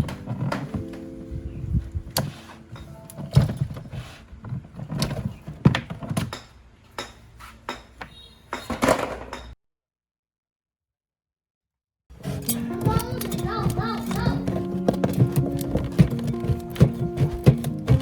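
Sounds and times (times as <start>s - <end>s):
metal parts clanking and rattling: 12.2s - 18.0s.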